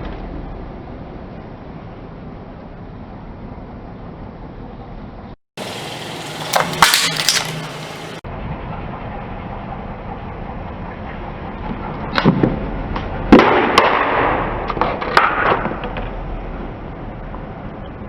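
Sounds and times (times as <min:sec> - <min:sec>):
car tyre crushing objects: 0:05.6 - 0:08.2
low engine rumble: 0:05.6 - 0:08.2.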